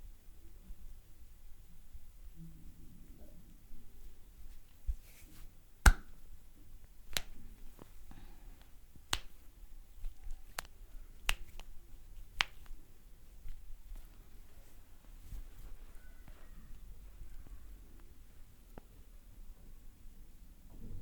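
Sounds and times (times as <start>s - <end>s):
hand snaps: 5.8s - 6.2s, 7.1s - 9.4s, 10.0s - 12.8s.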